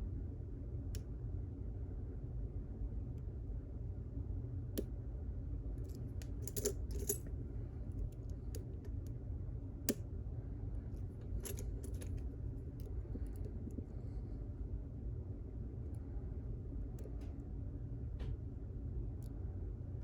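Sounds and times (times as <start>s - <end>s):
lock pick clicking in a lock: 6.0s - 7.2s, 11.4s - 12.2s.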